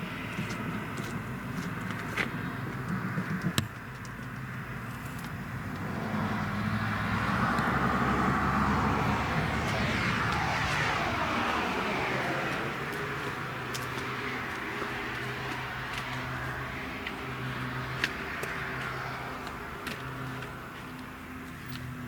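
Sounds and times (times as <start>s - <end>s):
vehicle passing by: 5.4s - 22.0s.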